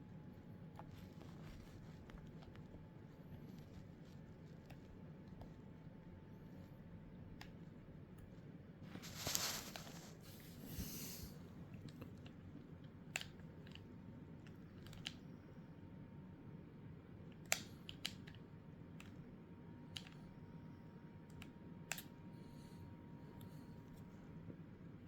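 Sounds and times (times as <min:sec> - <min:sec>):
low steady hum: 0:00.0 - 0:25.0
small sharp clicks and taps: 0:11.8 - 0:15.4, 0:17.3 - 0:20.4, 0:21.2 - 0:22.2.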